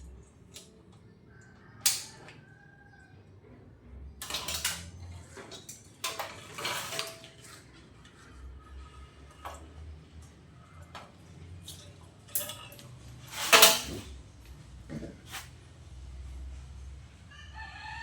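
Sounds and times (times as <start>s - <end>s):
metal tools clinking and rattling: 12.3s - 14.1s
metal clank: 13.3s - 14.1s.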